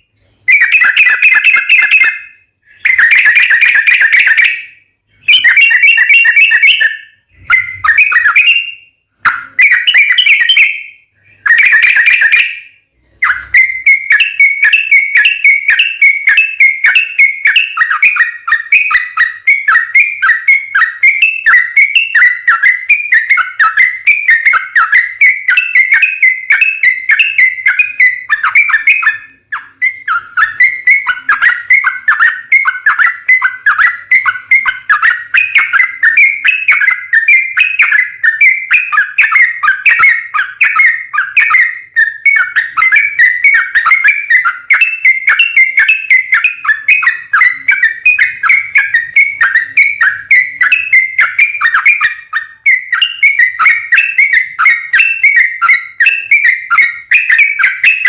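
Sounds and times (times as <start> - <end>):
bulbul song from lure recording: 0.2 - 58.0.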